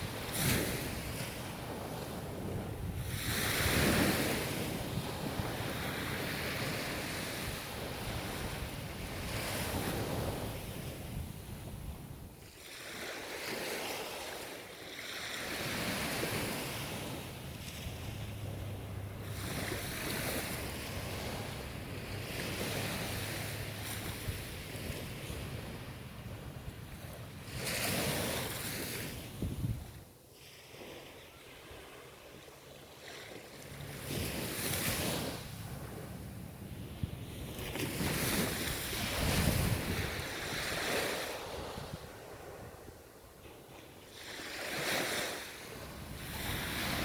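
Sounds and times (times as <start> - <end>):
ocean surf breaking: 12.5 - 29.4.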